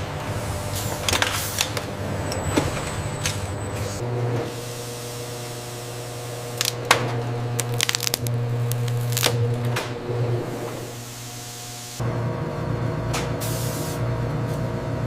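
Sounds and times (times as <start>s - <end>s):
machine hum: 1.9s - 13.0s.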